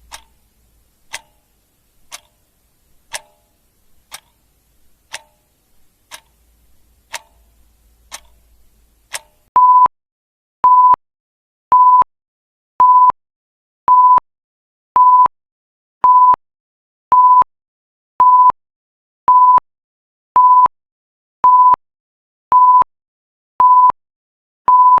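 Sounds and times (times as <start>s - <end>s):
electronic timer alarm beeping: 9.6s - 9.9s, 22.6s - 22.9s, 23.6s - 24.0s, 24.7s - 25.0s.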